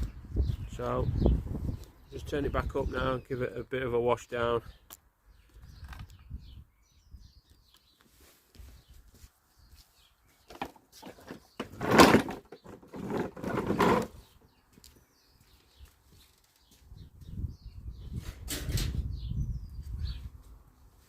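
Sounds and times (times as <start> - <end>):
lawnmower scraping and rattling: 10.6 - 14.4.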